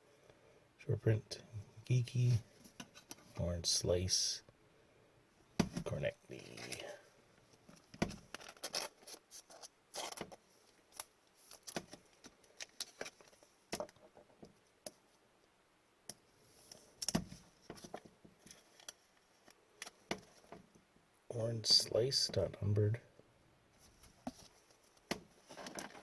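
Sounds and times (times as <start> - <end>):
cards rustling: 7.8 - 10.4.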